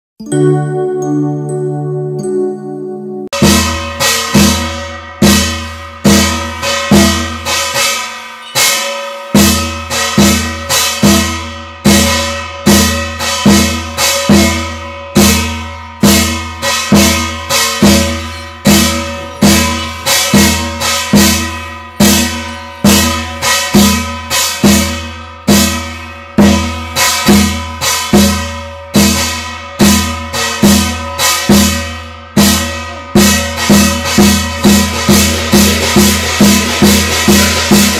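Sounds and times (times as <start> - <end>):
clashing cymbals or bells: 0.2 - 37.9
deep drum beating: 16.0 - 25.8.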